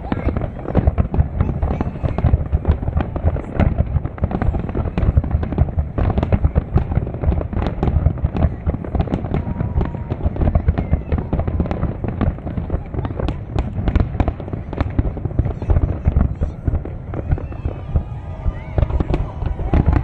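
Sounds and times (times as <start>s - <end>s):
fireworks booms and cracks: 0.0s - 20.0s.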